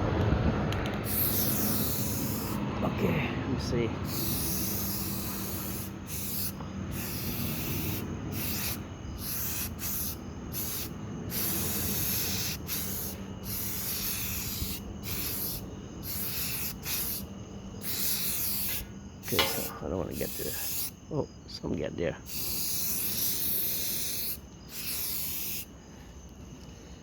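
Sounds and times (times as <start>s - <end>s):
aerosol spray can hissing: 1.0s - 2.7s, 4.0s - 21.0s, 22.3s - 25.7s.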